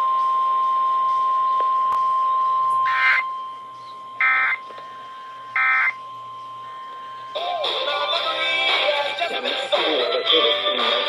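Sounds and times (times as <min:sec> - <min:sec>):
single-pitch warning alarm tone: 0:00.0 - 0:08.7
short digital data bursts: 0:02.6 - 0:08.6.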